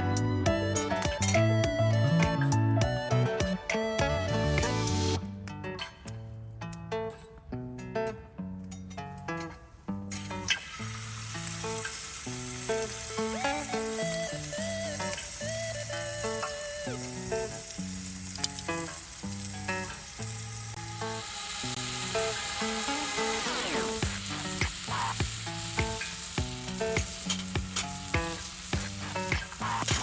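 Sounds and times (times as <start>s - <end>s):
background music: 0.0s - 5.3s, 12.4s - 18.0s
food sizzling in a pan: 10.2s - 30.0s.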